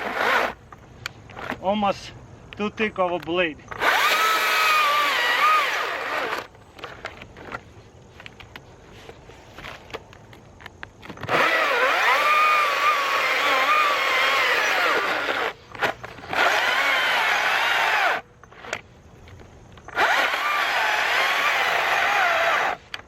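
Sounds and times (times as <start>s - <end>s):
electric chainsaw cutting log: 0.0s - 0.6s, 3.8s - 6.5s, 11.2s - 18.8s, 19.9s - 23.0s.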